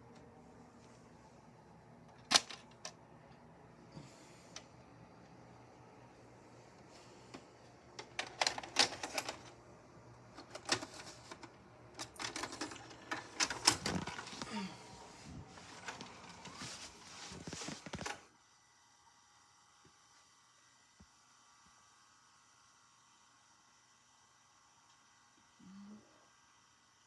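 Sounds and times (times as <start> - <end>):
faint steady hum: 0.0 - 27.0
plastic cassette clicks and clattering: 2.1 - 3.0, 8.0 - 9.5, 10.4 - 14.4.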